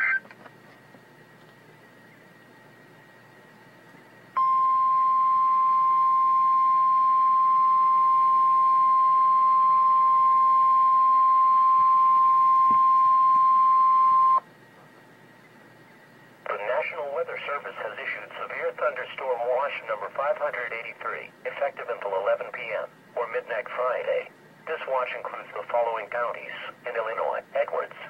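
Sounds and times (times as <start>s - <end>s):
single-tone warning alarm beep: 4.4s - 14.4s.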